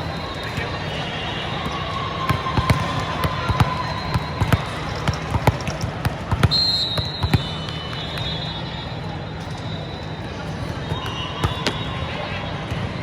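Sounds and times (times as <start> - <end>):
crowd noise: 0.0 - 13.0
volleyballs being struck and bouncing: 0.0 - 13.0.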